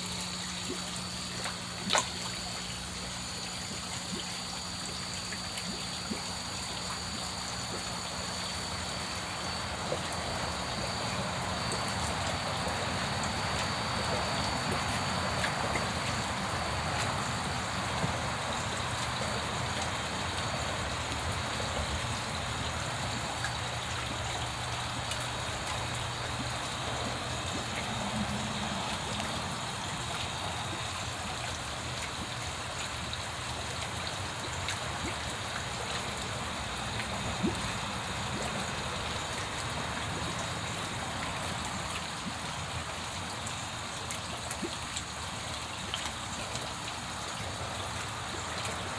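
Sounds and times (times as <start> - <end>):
drip-like ticks: 0.0 - 48.9
water trickling and splashing: 0.0 - 48.9.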